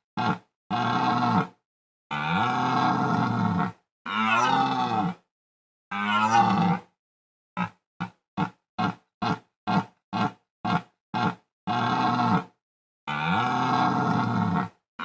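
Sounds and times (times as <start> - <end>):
deer stag roaring: 2.2 - 5.2, 5.9 - 6.8.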